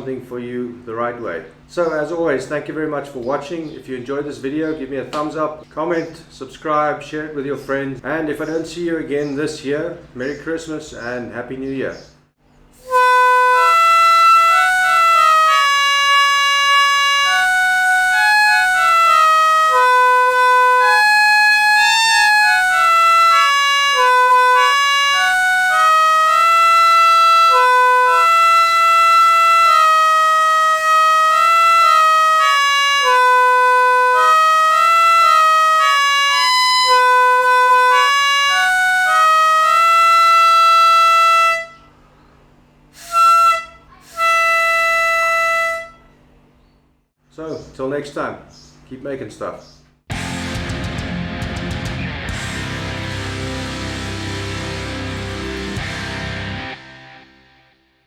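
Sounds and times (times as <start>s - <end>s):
slow reed instrument melody: 12.8s - 41.8s, 43.0s - 46.0s, 51.6s - 56.8s.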